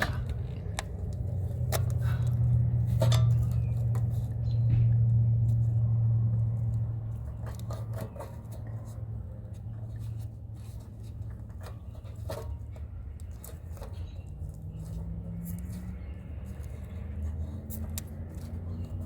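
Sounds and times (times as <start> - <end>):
light clicks and taps: 10.7 - 19.0.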